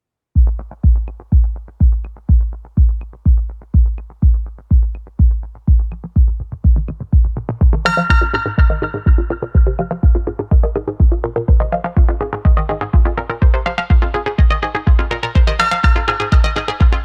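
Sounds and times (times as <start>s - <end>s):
hi-hat ticks: 0.4s - 11.9s
electronic music: 0.4s - 17.0s
heavy bass kick drum: 0.4s - 17.0s.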